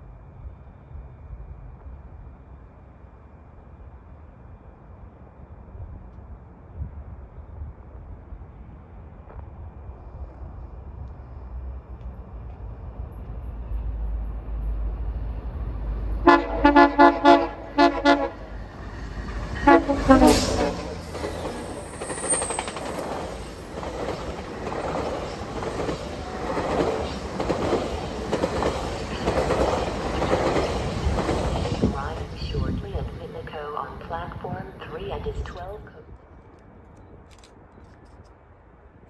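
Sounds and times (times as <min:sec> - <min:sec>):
train rumble: 0:00.0 - 0:36.2
train horn short blasts: 0:16.2 - 0:18.9, 0:19.6 - 0:21.1.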